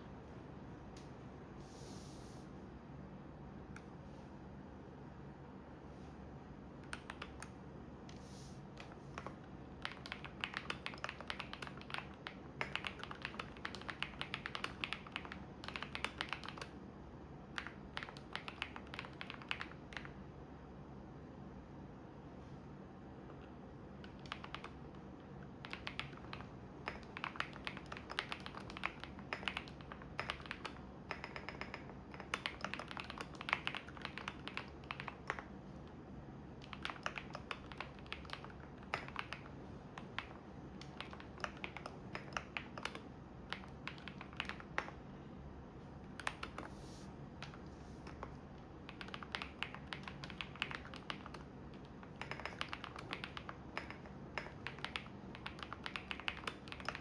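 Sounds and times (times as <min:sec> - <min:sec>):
keyboard typing: 0:06.8 - 0:08.2, 0:08.8 - 0:16.8, 0:17.5 - 0:20.2, 0:23.2 - 0:45.0, 0:46.0 - 0:57.0.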